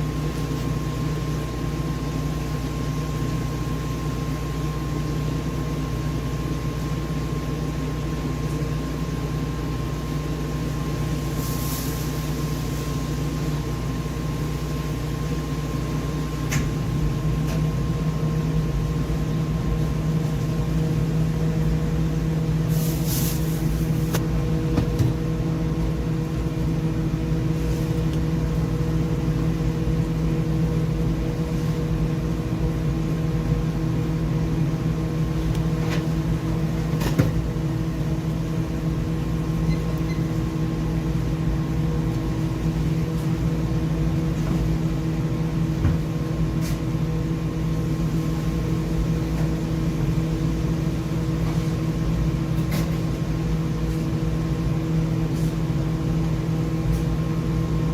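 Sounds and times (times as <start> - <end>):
machine hum with low rumble: 0.0 - 57.9.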